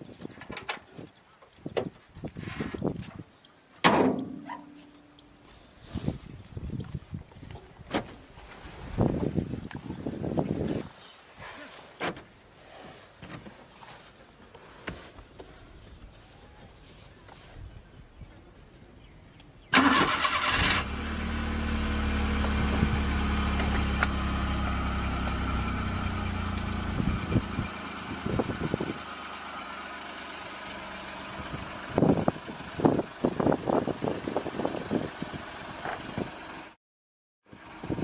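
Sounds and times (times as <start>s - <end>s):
short loud engine bursts: 19.7s - 22.9s
car engine starting and idling: 19.7s - 36.8s.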